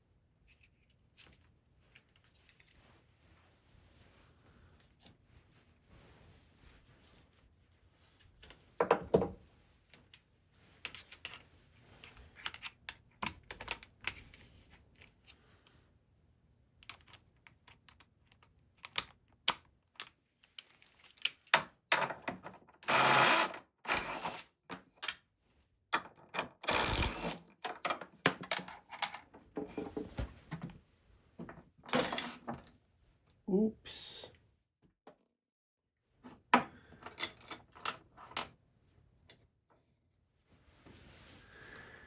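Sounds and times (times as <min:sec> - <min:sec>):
tools clicking and knocking: 0:10.9 - 0:11.4, 0:12.0 - 0:14.4, 0:16.8 - 0:25.2, 0:26.0 - 0:30.0.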